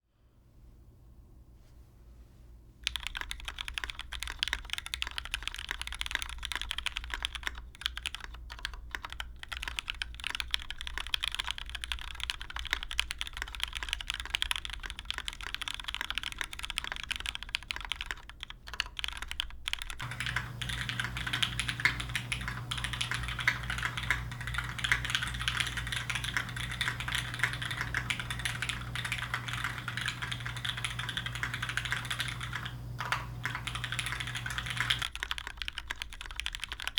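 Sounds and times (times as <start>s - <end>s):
fast mechanical keyboard typing: 2.8s - 36.9s
steady low hum: 20.0s - 35.1s.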